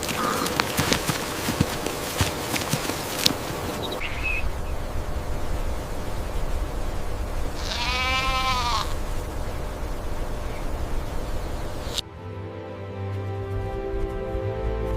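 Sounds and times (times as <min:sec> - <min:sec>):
low rumble: 0:03.3 - 0:12.0
bleat-like animal call: 0:07.6 - 0:09.0.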